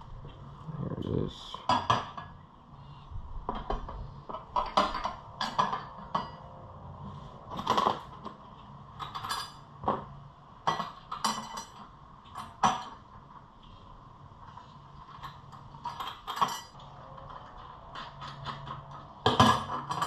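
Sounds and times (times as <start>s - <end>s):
metal tools clinking and knocking: 4.4s - 6.6s, 8.9s - 9.7s, 10.6s - 13.0s, 15.0s - 20.0s.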